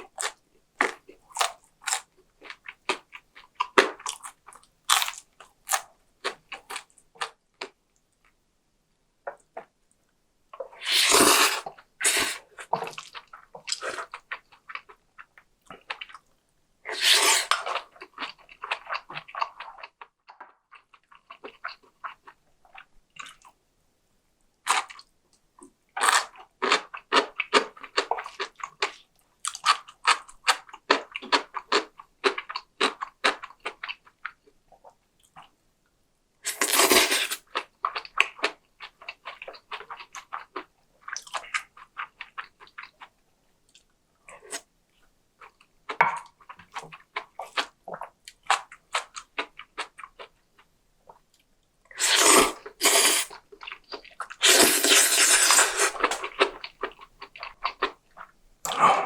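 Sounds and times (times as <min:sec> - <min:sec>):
crunchy chewing: 0:00.0 - 0:07.8, 0:51.9 - 0:59.0.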